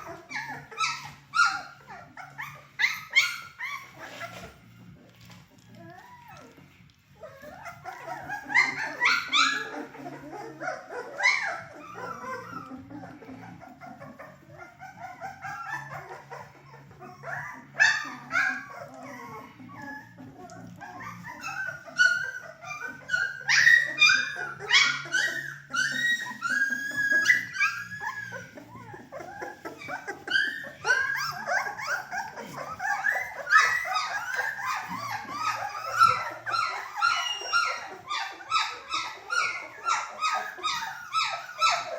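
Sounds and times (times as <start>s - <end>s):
puppies whining and yelping: 0.0s - 41.9s.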